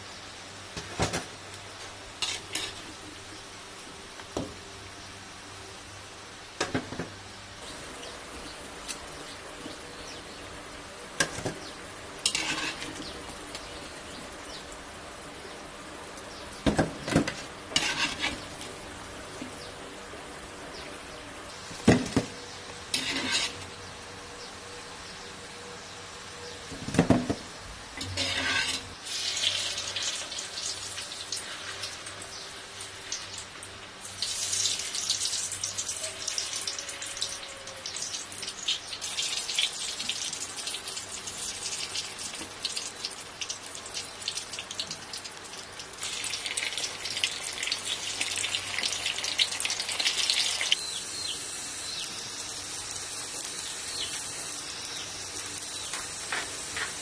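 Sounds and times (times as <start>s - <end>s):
water running and splashing: 29.1s - 50.8s.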